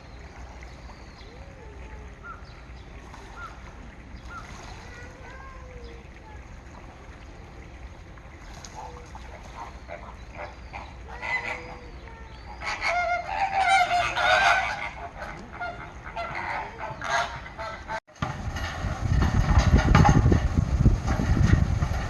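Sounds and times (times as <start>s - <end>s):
birds honking: 8.8s - 18.0s.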